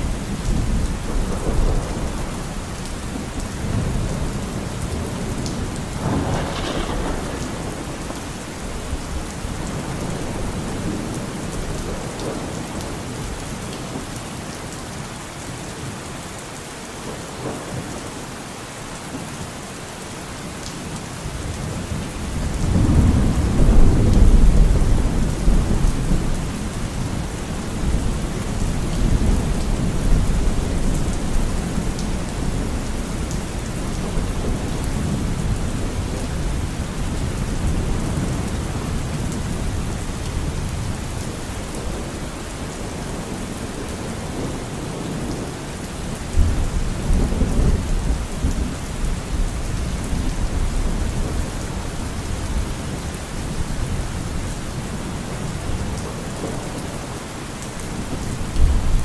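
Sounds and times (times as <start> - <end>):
rolling thunder: 0.0 - 13.4, 21.7 - 42.1, 57.9 - 59.0
heavy rainfall: 0.0 - 59.0.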